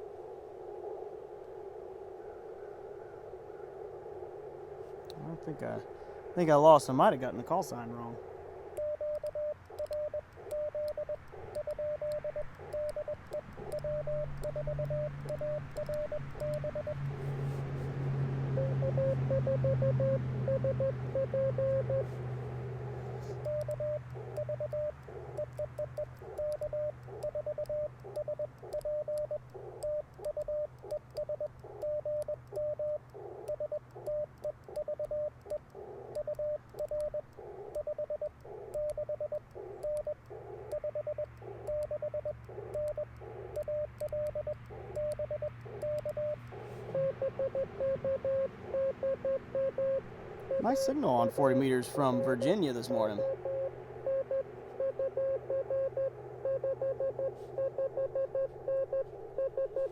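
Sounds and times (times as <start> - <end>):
low hum: 0.0 - 59.9
lower-pitched morse code: 6.4 - 17.6, 18.5 - 22.2, 22.9 - 59.9
morse code beeping tone: 8.8 - 17.0, 18.5 - 22.1, 23.2 - 35.3, 36.1 - 59.9.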